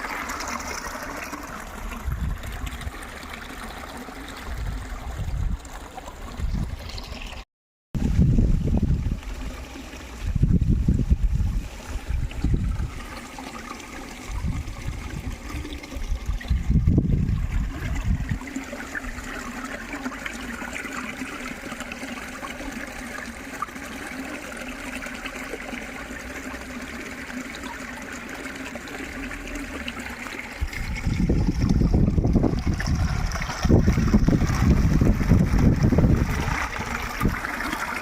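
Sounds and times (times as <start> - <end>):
water trickling and babbling: 0.0 - 7.4, 8.0 - 38.0
wind rumbling on microphone: 1.7 - 3.1, 4.4 - 7.4, 8.0 - 13.2, 14.3 - 19.2, 30.6 - 37.8.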